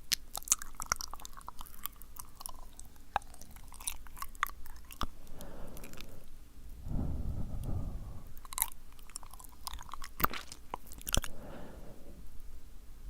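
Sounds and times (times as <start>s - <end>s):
wet mouth clicks and smacks: 0.0s - 6.3s, 8.4s - 11.4s
soft breath: 5.1s - 8.9s, 11.2s - 12.7s.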